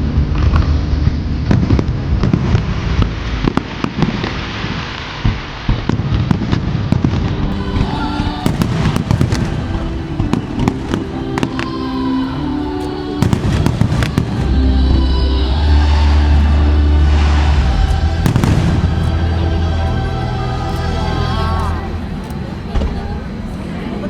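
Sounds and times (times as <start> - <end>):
firework crackling: 3.4 - 15.1, 15.7 - 23.2.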